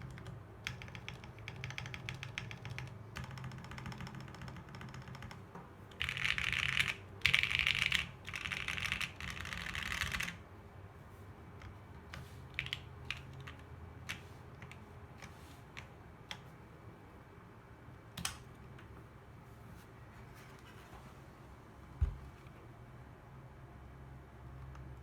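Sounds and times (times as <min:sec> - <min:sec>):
mechanical keyboard typing: 0:00.0 - 0:10.4, 0:12.5 - 0:16.4.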